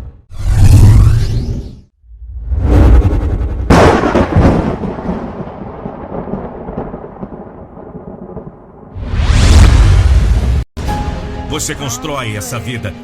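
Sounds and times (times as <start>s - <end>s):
deep boom with rumble: 2.5s - 10.6s.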